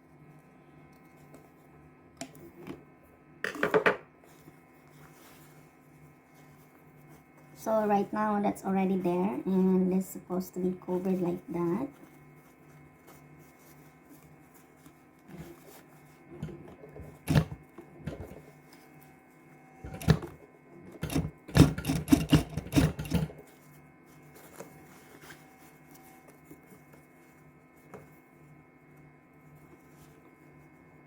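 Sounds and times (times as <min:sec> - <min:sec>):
sewing machine stitching: 0:19.9 - 0:20.3, 0:20.9 - 0:23.4.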